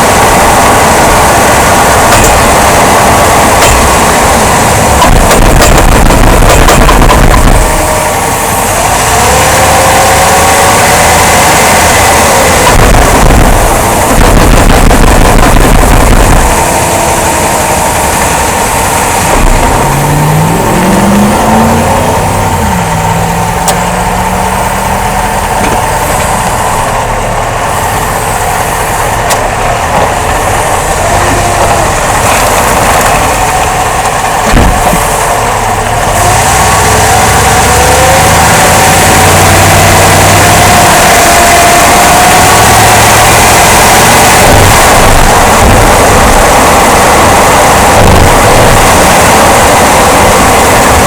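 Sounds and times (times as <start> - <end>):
car engine accelerating: 0.0 - 51.0
steady whine: 0.0 - 51.0
driveline thumps: 34.2 - 35.3.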